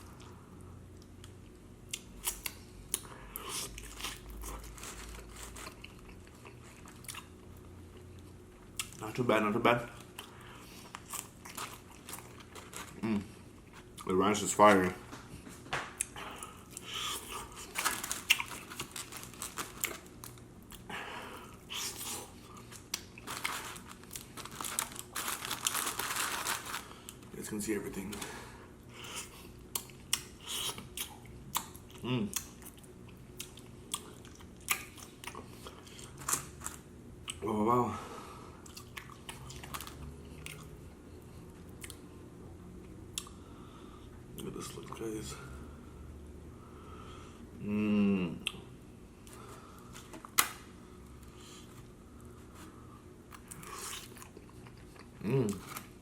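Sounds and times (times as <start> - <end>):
person chewing and smacking: 0.9 - 9.0, 16.0 - 20.9, 21.5 - 24.4, 29.0 - 37.4, 38.6 - 42.1, 53.3 - 56.0.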